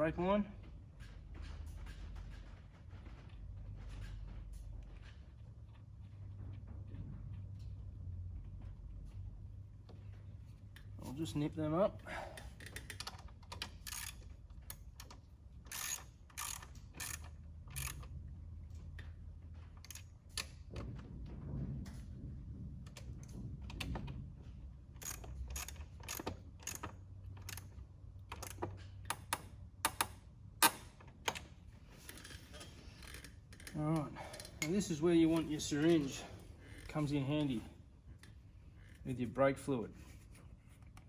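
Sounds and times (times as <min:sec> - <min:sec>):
socket ratchet clicking: 0:12.6 - 0:18.2, 0:25.0 - 0:27.7, 0:28.3 - 0:31.4.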